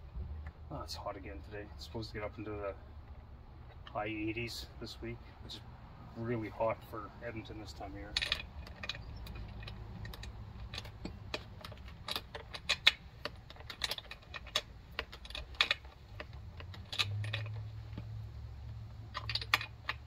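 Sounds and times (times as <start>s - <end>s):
low steady hum: 0.0s - 20.0s
metallic wrench clicks: 8.1s - 18.1s.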